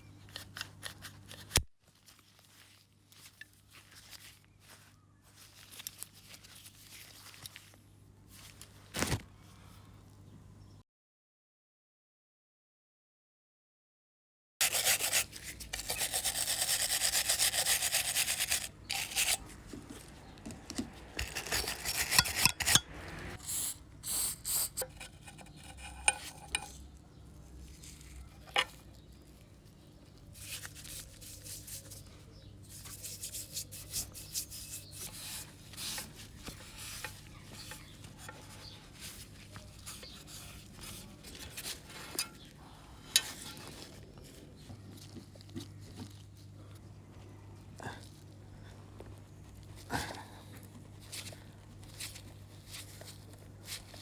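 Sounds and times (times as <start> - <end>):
rasping and rubbing: 14.6 - 20.1, 21.0 - 26.8.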